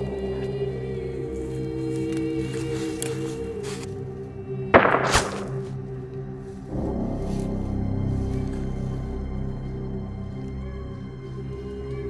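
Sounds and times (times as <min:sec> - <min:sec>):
low sustained background music: 0:00.0 - 0:12.0
gunshot crack: 0:04.8 - 0:05.8.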